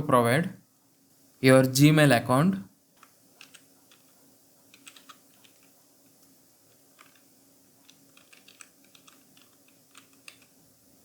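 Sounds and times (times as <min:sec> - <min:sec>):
faint typing on keyboard: 0:02.9 - 0:10.8.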